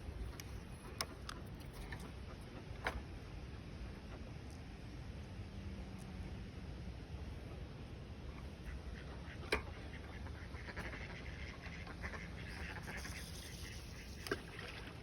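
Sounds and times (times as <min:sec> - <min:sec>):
ducks quacking: 0:08.3 - 0:14.9.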